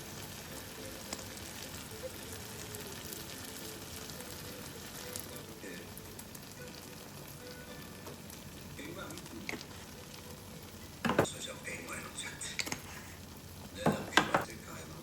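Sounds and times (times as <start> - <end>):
food sizzling in frying pan: 0.0 - 15.0.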